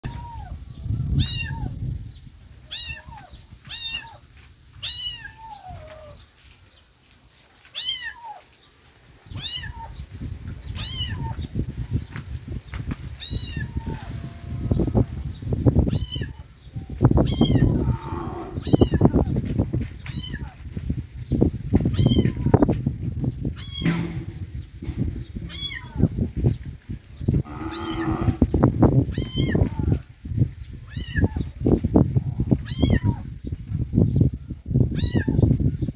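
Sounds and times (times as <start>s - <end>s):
kittens meowing: 0.0s - 1.7s, 2.7s - 4.2s, 4.8s - 6.2s, 10.8s - 11.4s, 15.9s - 16.4s, 17.2s - 19.1s, 21.9s - 22.6s, 25.4s - 26.1s, 29.1s - 30.0s, 30.8s - 31.5s, 32.6s - 33.3s, 35.0s - 35.4s
low knocks and rumbles: 23.8s - 25.8s
kitten meowing: 32.7s - 33.2s.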